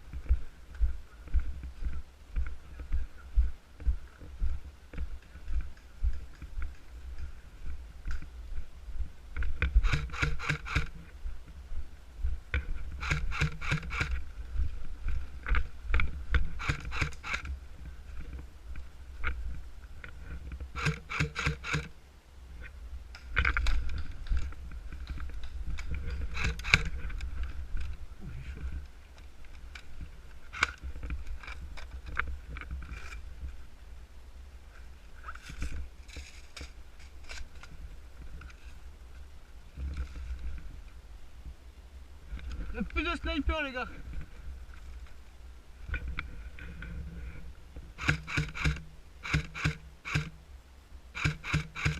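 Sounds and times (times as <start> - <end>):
low rumble of wind: 0.0 - 51.9
airsoft guns firing rapid clicks: 9.8 - 11.0, 13.0 - 14.2, 16.6 - 17.5, 20.8 - 21.9, 26.3 - 26.9, 48.0 - 50.4, 51.2 - 51.9.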